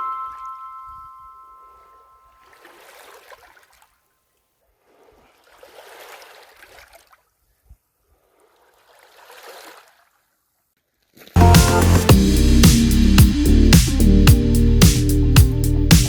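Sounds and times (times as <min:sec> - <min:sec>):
small waves lapping on shore: 0:04.8 - 0:07.2, 0:08.2 - 0:10.0
loud music: 0:11.4 - 0:16.0.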